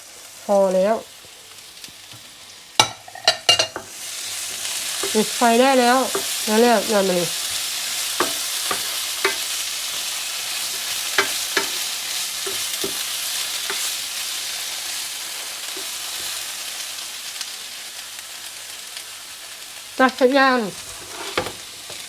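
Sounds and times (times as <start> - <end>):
food sizzling in a frying pan: 0.0 - 22.0
utensil knocking against pan: 6.0 - 6.4, 8.2 - 9.5, 10.8 - 11.8.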